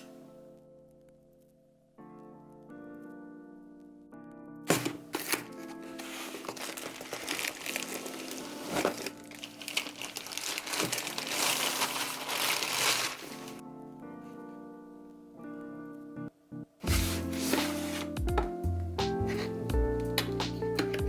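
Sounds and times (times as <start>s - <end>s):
soft background music: 0.0s - 21.0s
packaging crinkling: 4.7s - 13.6s.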